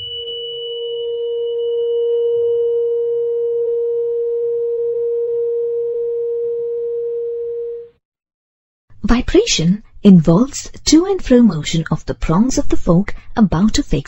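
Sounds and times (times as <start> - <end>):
tuning fork ringing: 0.0 - 8.0.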